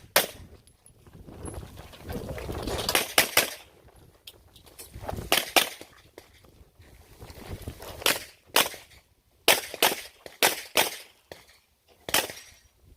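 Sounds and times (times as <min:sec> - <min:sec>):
pistol shots: 0:09.5 - 0:11.5, 0:12.1 - 0:12.5.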